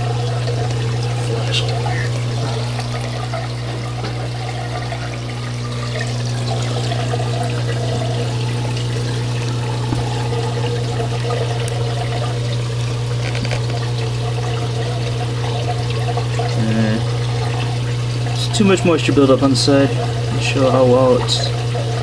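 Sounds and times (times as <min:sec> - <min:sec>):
water pouring and trickling: 0:00.0 - 0:22.0
water pump hum: 0:00.0 - 0:22.0.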